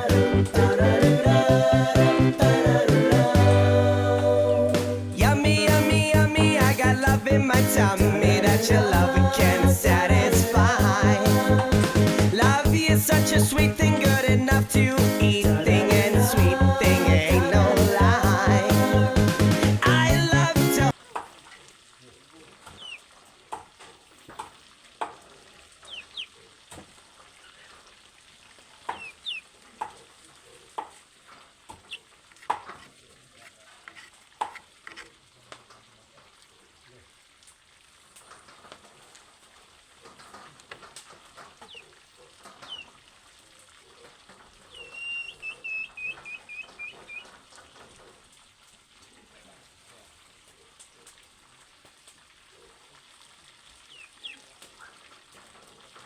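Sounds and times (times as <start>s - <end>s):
food sizzling in a pan: 20.9s - 56.0s
birds chirping: 22.7s - 23.0s, 25.9s - 26.3s, 28.9s - 29.4s, 41.6s - 41.9s, 42.5s - 42.9s, 44.6s - 47.3s, 53.9s - 55.0s.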